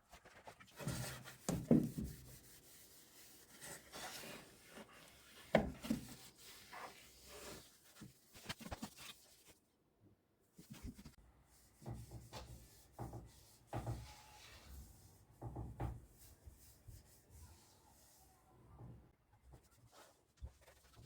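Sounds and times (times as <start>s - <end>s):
hand scrubbing a surface: 0.7s - 8.2s.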